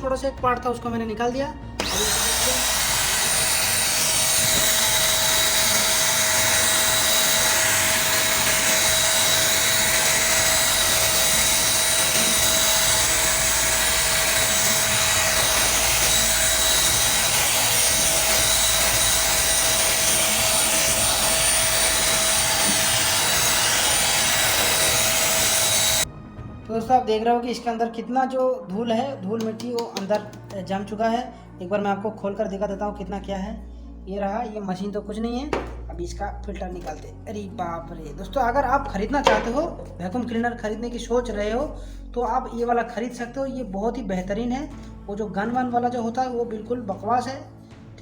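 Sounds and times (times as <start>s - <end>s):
handheld vacuum cleaner running: 1.8s - 26.1s.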